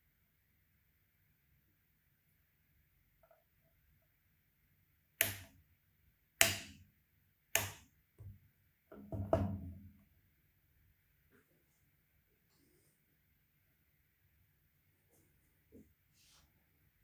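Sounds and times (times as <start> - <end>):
hard objects knocking: 8.9 - 9.8.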